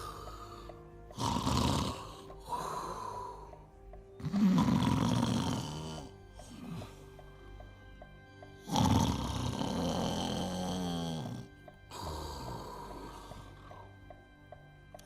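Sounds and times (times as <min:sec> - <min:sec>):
background music repeating note: 0:00.0 - 0:15.0
man snoring loudly: 0:01.1 - 0:03.5, 0:04.2 - 0:07.0, 0:08.6 - 0:13.8.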